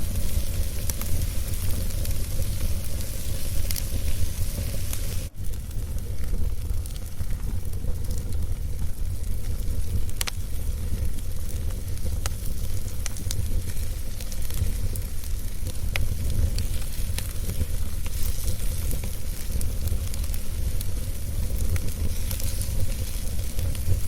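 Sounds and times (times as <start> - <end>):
fire crackles and pops: 0.0 - 24.0
fire rumbling and hissing: 0.0 - 24.0.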